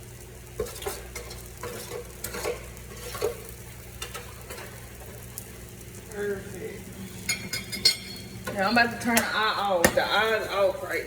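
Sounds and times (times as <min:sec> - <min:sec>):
peppers sizzling in a frying pan: 0:00.0 - 0:11.0
utensil scraping and knocking pan: 0:00.6 - 0:04.8.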